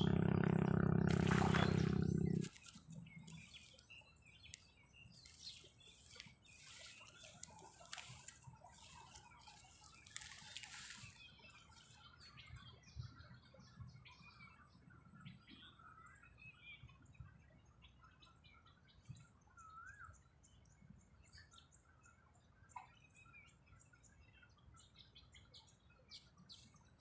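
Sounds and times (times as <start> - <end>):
loud low rumble: 0.0 - 2.5
faint bird chirps: 0.0 - 27.0.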